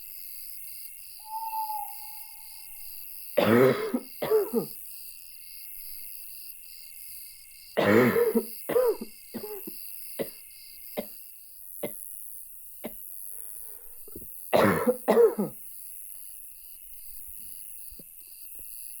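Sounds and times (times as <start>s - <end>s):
man coughing: 3.4s - 4.7s, 7.8s - 9.7s, 14.6s - 15.5s.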